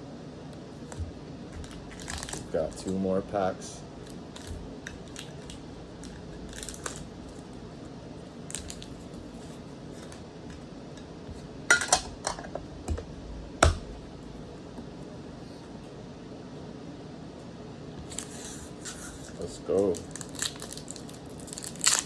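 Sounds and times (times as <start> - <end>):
card packs clicking and crinkling: 1.6 - 3.0, 4.0 - 7.5, 8.5 - 9.2, 18.1 - 22.0.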